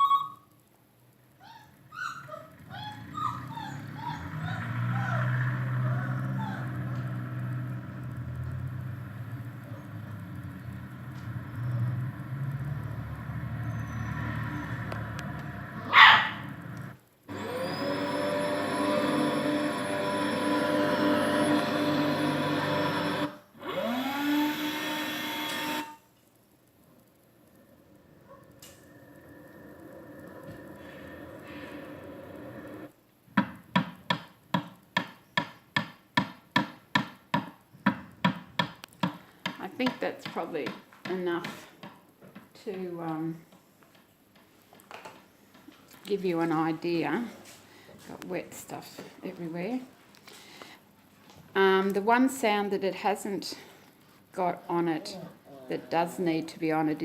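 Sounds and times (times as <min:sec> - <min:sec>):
vehicle engine rumbling: 0:02.6 - 0:17.0
steady noise: 0:26.2 - 0:33.0
hammer-like knocking: 0:33.4 - 0:42.0.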